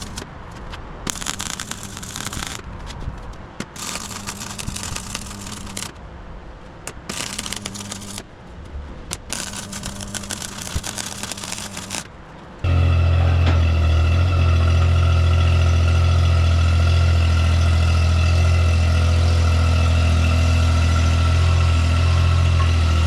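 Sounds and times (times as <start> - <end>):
crackling sputtering noise: 0.0 - 0.2, 1.1 - 2.7, 3.6 - 6.0, 6.9 - 8.3, 9.1 - 12.1.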